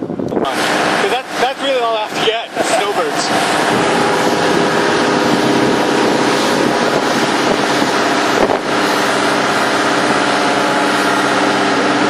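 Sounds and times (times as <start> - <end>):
engine hum: 0.0 - 12.0
wind on microphone: 0.0 - 12.0.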